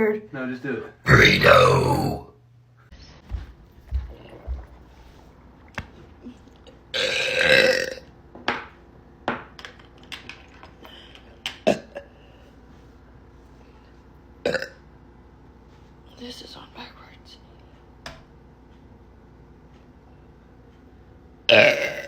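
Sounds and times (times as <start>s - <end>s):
woman burping: 1.1s - 2.3s, 6.9s - 8.0s, 21.5s - 22.0s.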